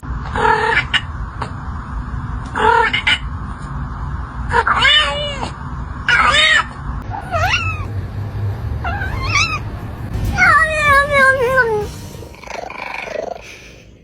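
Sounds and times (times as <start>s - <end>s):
cat meowing: 6.1s - 7.9s, 8.8s - 9.6s.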